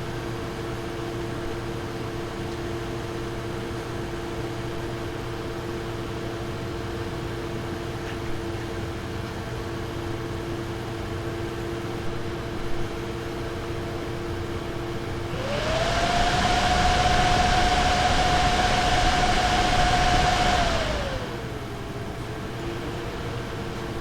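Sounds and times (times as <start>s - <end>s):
graphics card fans whirring: 15.2s - 21.7s.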